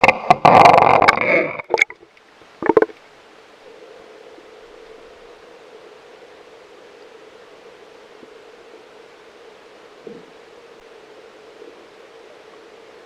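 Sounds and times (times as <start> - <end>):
water gurgles: 0.0 - 5.3
faint underwater hiss: 0.0 - 13.0.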